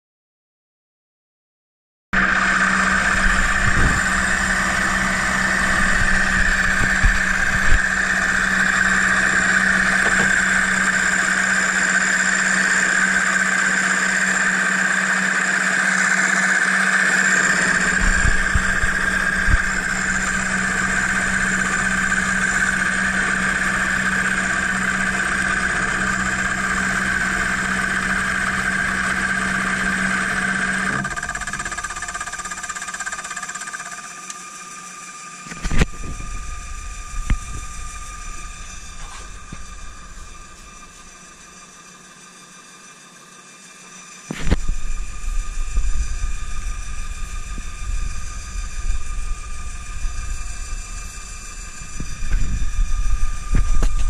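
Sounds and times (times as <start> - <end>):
machine motor humming: 2.2 - 54.0.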